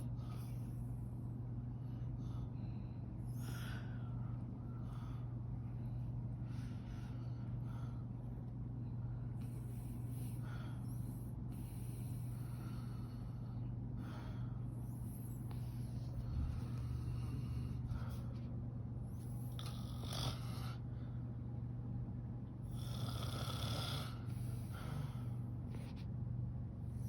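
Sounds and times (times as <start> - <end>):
women snoring: 19.5 - 20.8, 22.7 - 25.1.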